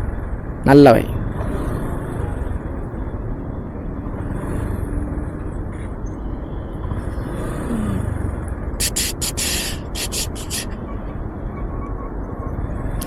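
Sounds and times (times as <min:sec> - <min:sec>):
road traffic rumble: 0:00.0 - 0:13.0
short bursts of hiss: 0:08.8 - 0:10.8.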